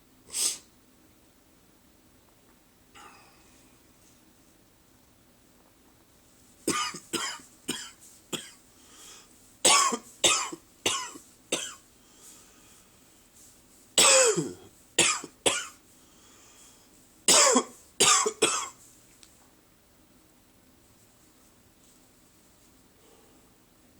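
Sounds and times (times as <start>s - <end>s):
man coughing: 6.7s - 8.6s, 9.7s - 11.8s, 14.0s - 15.8s, 17.3s - 18.8s.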